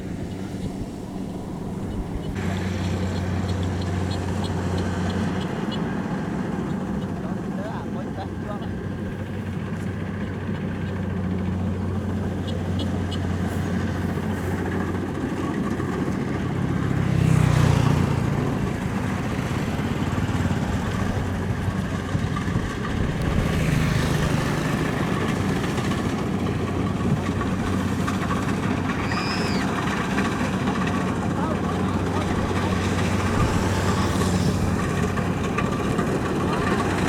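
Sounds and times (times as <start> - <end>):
combine harvester diesel engine: 0.0 - 37.0.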